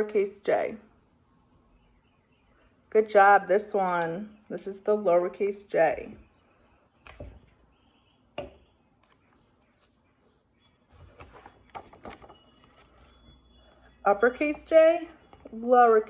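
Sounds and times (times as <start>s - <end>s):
soft paper rustling: 9.0s - 13.8s.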